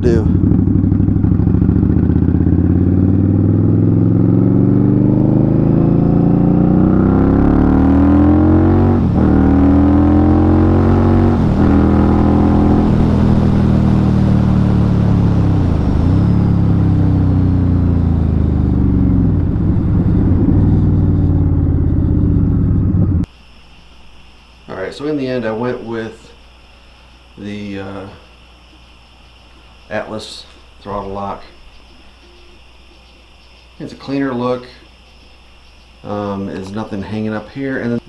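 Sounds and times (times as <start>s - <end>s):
motorcycle engine revving: 0.0s - 23.3s.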